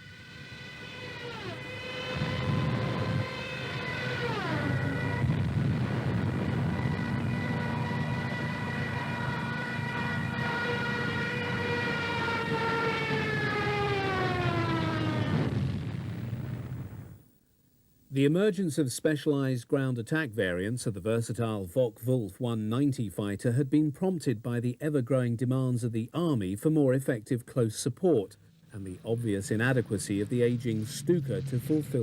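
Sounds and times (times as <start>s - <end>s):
dive siren wailing: 0.0s - 15.6s, 28.9s - 32.0s
low engine drone: 0.0s - 17.1s, 28.4s - 32.0s.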